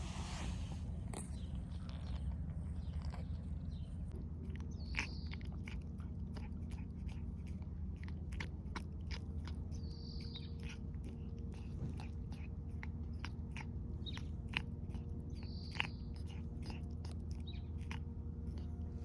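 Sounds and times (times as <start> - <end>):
cat licking and eating: 0.0 - 19.0
bird chirping: 1.2 - 5.8, 9.2 - 12.5, 14.0 - 18.7.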